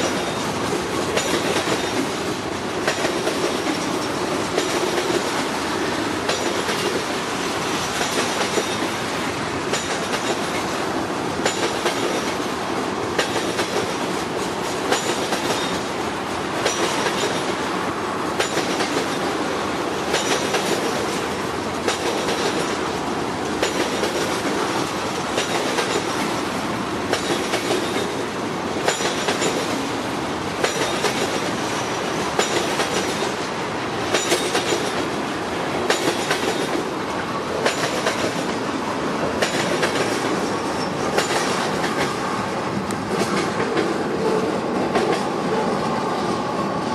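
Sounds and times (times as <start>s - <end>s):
wheels clicking over rail joints: 0.0s - 45.6s
train rumble: 0.0s - 46.9s
faint high wheel squeal: 40.6s - 41.2s.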